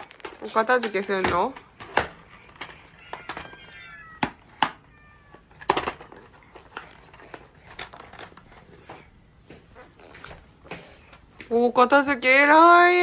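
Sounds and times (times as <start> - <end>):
book knocking and clattering: 0.0 - 4.8
cat meow from small speaker: 3.0 - 5.5.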